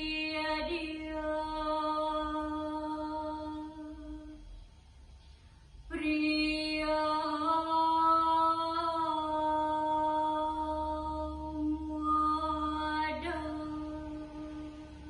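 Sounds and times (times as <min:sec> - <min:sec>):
person chanting in long notes: 0:05.9 - 0:15.0.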